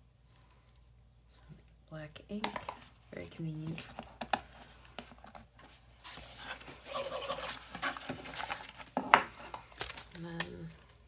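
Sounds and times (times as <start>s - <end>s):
packaging rustling and crinkling: 3.3s - 11.0s.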